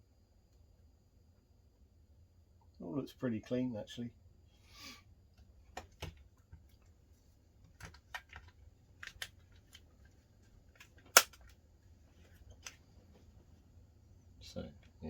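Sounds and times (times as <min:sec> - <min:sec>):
plastic controller clicks: 0:07.8 - 0:09.8, 0:10.9 - 0:11.5.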